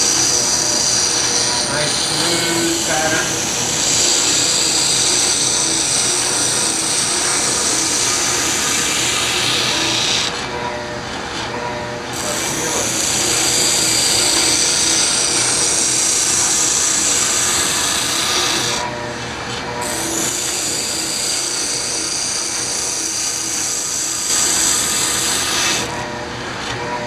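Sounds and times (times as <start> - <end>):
wood rasping on sanding drum: 0.0 - 10.4, 12.2 - 18.9, 19.8 - 26.0
sander motor hum: 0.0 - 26.6.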